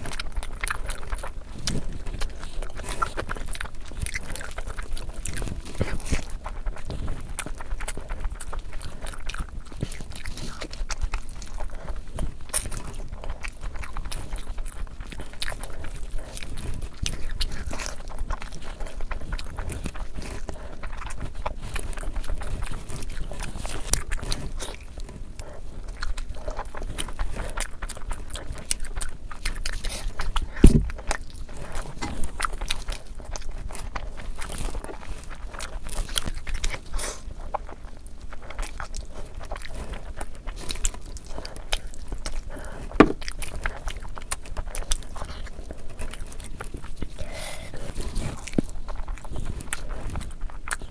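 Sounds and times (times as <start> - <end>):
person chewing food: 0.0 - 50.9
heavy thump: 30.6 - 30.9, 43.0 - 43.2.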